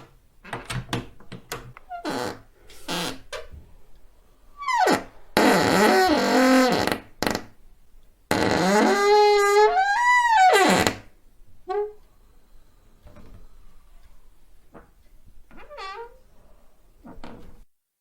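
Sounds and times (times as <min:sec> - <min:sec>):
door hinges creaking: 0:00.0 - 0:03.6, 0:04.6 - 0:07.5, 0:08.3 - 0:11.1, 0:15.5 - 0:16.3, 0:17.0 - 0:17.6.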